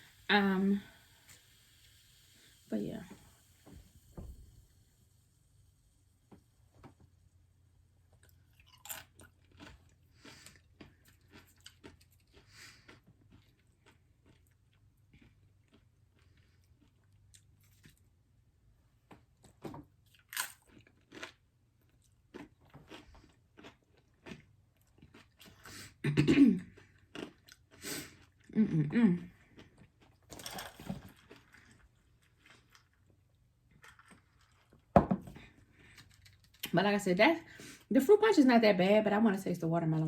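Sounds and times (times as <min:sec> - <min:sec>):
chewing and crunching food: 0:08.1 - 0:18.2, 0:19.3 - 0:36.8.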